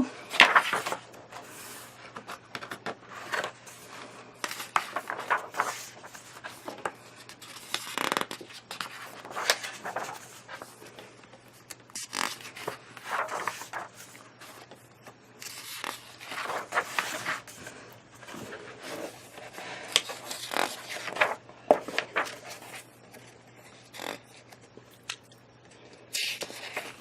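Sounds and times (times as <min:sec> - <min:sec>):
magazine pages rustling: 0:00.3 - 0:23.3.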